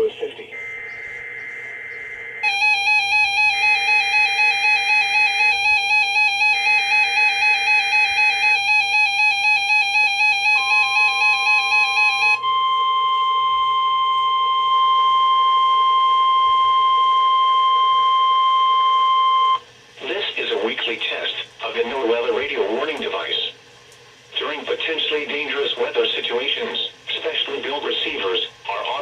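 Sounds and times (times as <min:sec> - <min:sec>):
data bursts: 0:00.0 - 0:12.7
high steady alert tone: 0:00.0 - 0:14.6
warbling electronic siren: 0:00.0 - 0:19.6.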